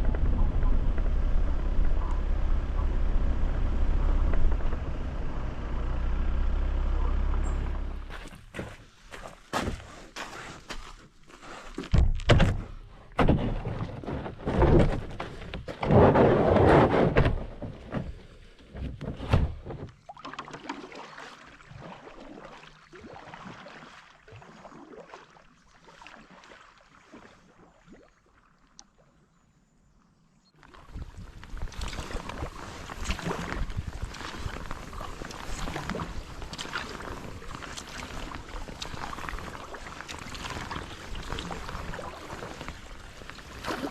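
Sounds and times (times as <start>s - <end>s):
kayak and paddle thunks: 0.0s - 24.1s, 30.6s - 43.9s
water rushing and splashing: 20.0s - 28.4s, 30.6s - 43.9s.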